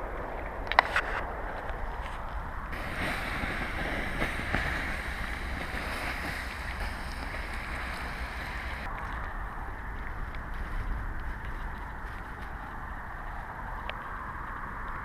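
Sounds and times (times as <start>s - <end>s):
wind buffeting microphone: 0.0s - 15.0s
outdoor hiss: 2.7s - 8.9s
faint ticks: 10.0s - 15.0s.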